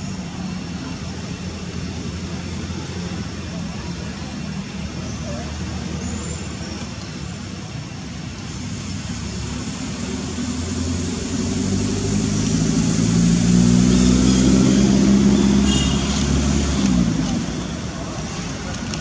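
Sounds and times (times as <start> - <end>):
vehicle engine passing by: 8.7 - 19.0.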